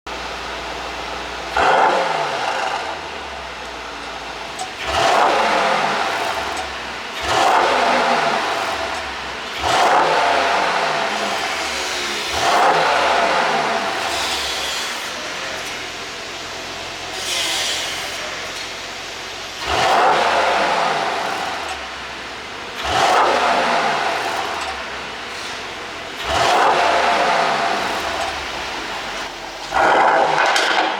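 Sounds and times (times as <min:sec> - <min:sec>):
car engine idling: 0:00.1 - 0:30.9
car engine revving: 0:00.1 - 0:30.9.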